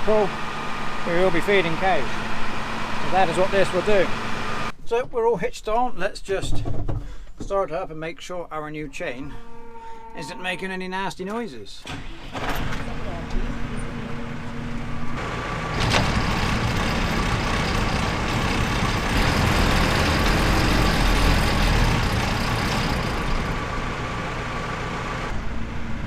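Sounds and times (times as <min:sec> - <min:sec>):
feed mixer clatter and rumble: 0:00.0 - 0:04.7, 0:15.2 - 0:23.8
tractor engine: 0:00.0 - 0:04.8, 0:11.3 - 0:26.0.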